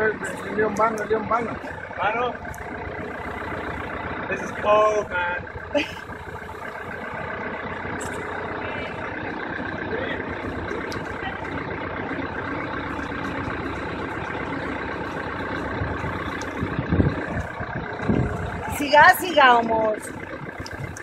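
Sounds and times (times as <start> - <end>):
diesel engine running: 0.0 - 21.0
low thuds: 10.3 - 21.0.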